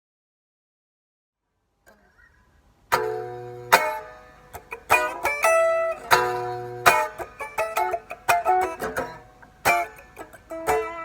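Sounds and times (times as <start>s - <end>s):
electric guitar chords and notes: 2.9s - 11.0s.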